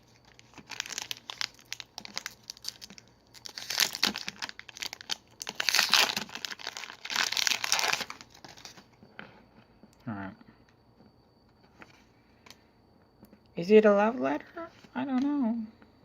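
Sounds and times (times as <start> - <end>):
wrapper crinkling: 0.0 - 8.8.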